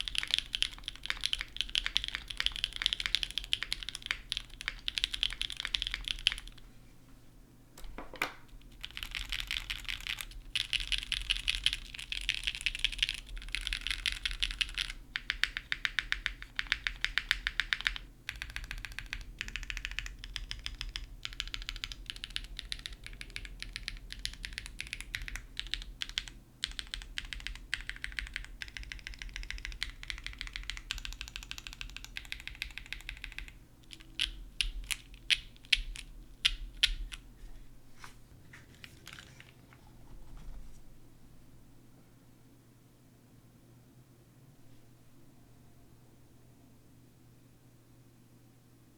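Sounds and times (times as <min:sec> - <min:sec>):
mechanical keyboard clacking: 0:00.0 - 0:06.6, 0:07.8 - 0:37.2.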